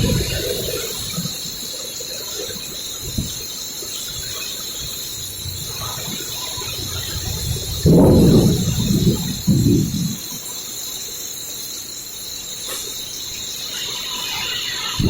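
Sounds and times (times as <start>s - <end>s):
heavy rain falling: 0.0s - 11.1s.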